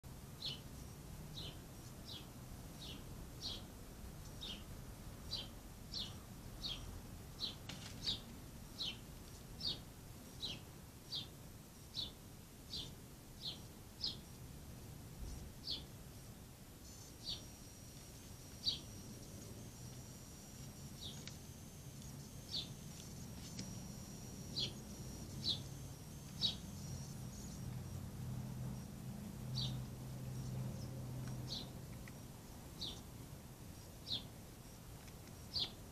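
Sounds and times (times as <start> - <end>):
low background hum: 0.1 - 35.9
bird chirping: 0.4 - 14.5, 15.2 - 35.9
thin high steady tone: 15.2 - 35.9.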